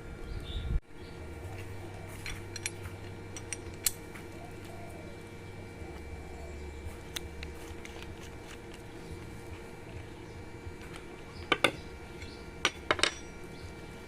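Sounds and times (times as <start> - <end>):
steady low hum: 0.0 - 14.0
small metal tools clinking: 2.2 - 4.0, 11.4 - 13.4.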